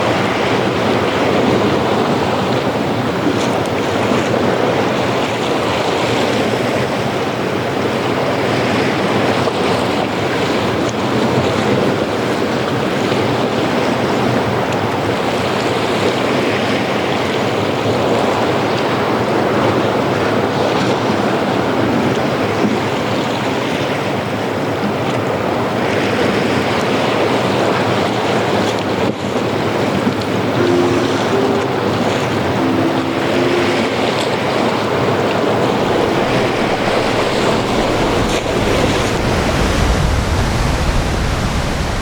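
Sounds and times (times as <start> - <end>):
ocean waves breaking on beach: 23.8 - 42.0.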